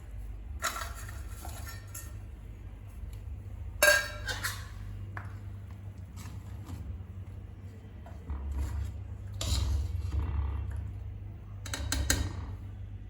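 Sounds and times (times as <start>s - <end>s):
pot and utensils clattering: 0.6s - 2.2s, 3.8s - 4.9s.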